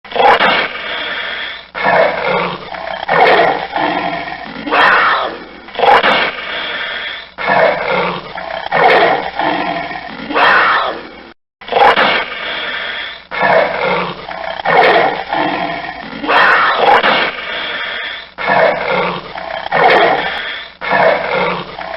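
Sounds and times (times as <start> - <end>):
panther roaring: 0.1 - 21.9.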